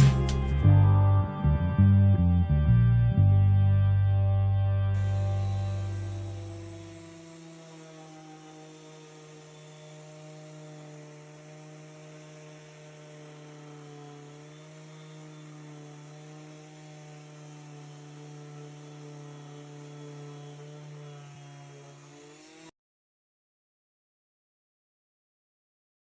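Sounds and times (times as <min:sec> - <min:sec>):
electrical hum: 0:00.0 - 0:07.6.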